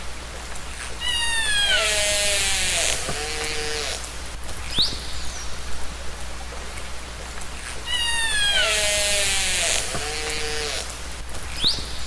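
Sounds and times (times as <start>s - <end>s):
killer whale calls: 1.0s - 4.0s, 7.8s - 11.0s.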